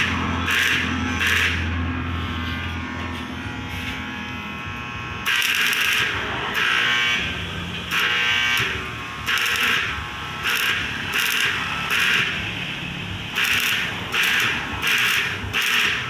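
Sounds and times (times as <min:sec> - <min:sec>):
arc welding buzz: 0:00.0 - 0:16.0.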